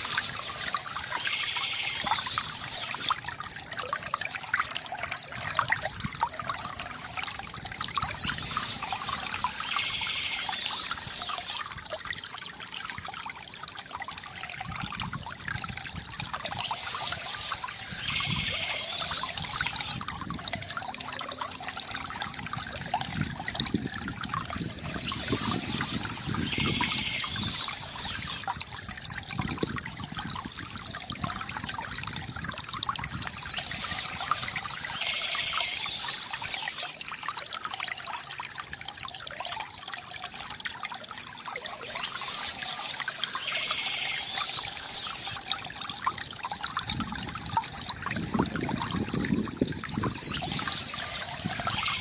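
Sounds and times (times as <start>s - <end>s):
bird song: 0.0s - 3.2s, 7.9s - 11.6s, 16.3s - 20.0s, 24.6s - 28.5s, 33.1s - 36.9s, 41.6s - 45.6s, 50.0s - 52.0s
stream trickling and babbling: 0.0s - 52.0s.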